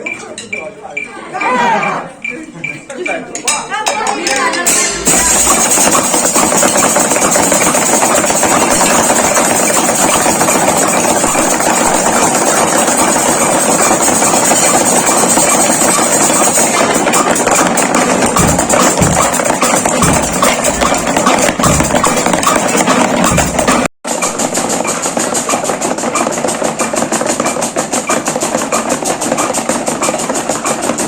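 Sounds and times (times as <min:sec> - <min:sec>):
fast drumming: 0:02.6 - 0:31.0
low thumps: 0:04.6 - 0:13.4, 0:16.7 - 0:23.9
high cymbal wash: 0:04.7 - 0:06.2.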